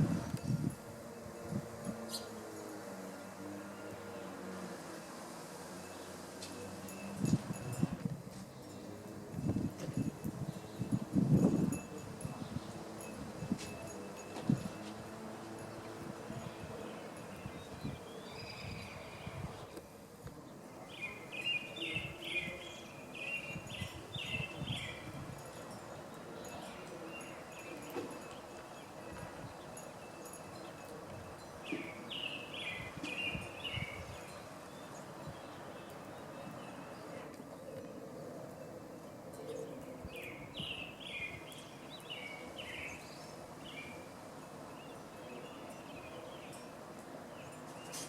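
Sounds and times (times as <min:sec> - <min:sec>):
outdoor background noise: 0:00.0 - 0:48.0
songbird chirping: 0:12.2 - 0:48.0.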